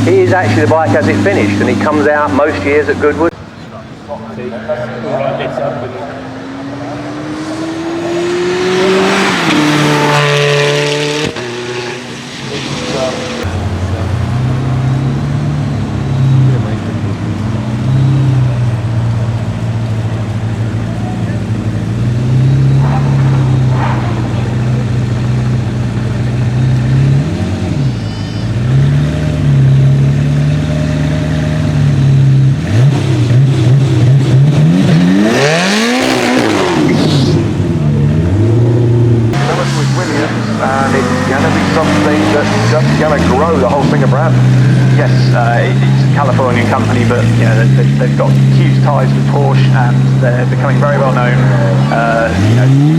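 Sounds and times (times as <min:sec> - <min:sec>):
racing engine accelerating past: 0:04.4 - 0:13.6, 0:22.2 - 0:25.6, 0:34.6 - 0:49.2.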